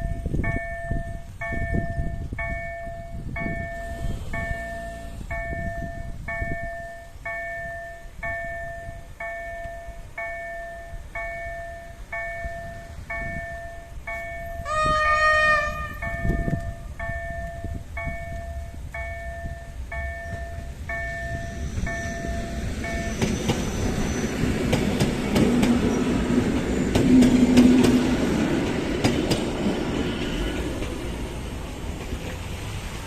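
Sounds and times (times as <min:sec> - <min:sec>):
level crossing warning bell: 0:00.0 - 0:27.0
train wheels clicking over rail joints: 0:16.1 - 0:33.0.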